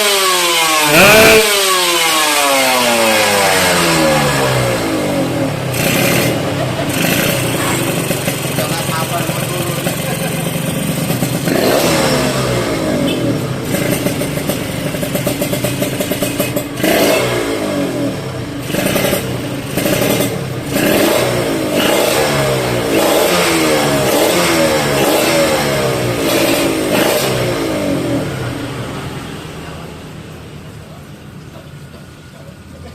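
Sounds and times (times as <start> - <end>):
two-stroke motorcycle engine revving: 0.0 - 30.2.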